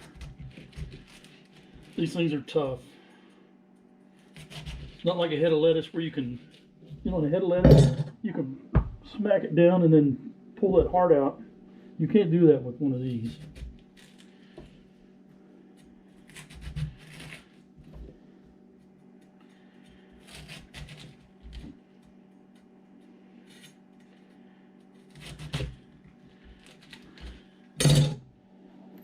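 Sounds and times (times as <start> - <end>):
knife crunching cabbage: 0.0 - 2.3, 4.2 - 5.4, 13.0 - 14.6, 15.8 - 17.9, 19.0 - 22.7, 23.4 - 27.5
steady low hum: 0.0 - 29.0.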